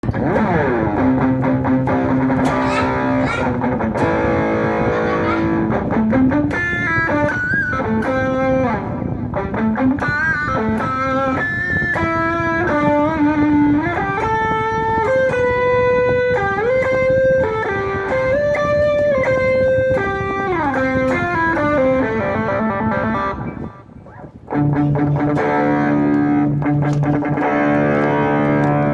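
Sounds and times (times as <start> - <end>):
distorted electric guitar: 0.0 - 28.9.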